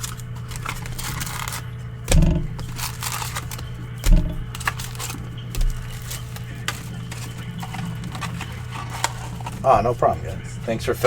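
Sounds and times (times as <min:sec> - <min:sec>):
packaging rustling and clicks: 0:00.0 - 0:09.7
steady low hum: 0:00.0 - 0:11.0
dull thumps: 0:02.0 - 0:09.7.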